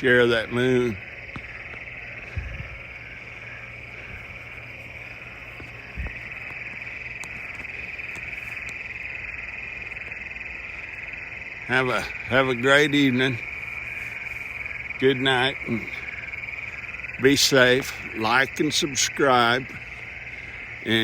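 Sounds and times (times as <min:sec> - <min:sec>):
frogs trilling: 0:00.0 - 0:21.0.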